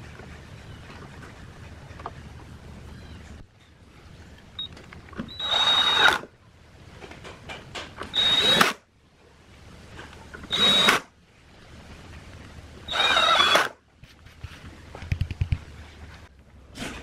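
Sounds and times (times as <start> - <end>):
power drill whining: 5.3 - 6.3, 8.0 - 8.8, 10.5 - 11.0, 12.9 - 13.8.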